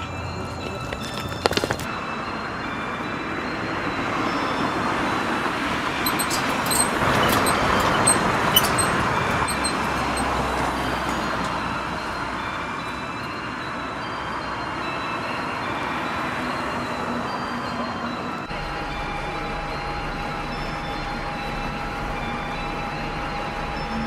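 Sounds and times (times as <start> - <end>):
vehicle passing: 0.0 - 24.0.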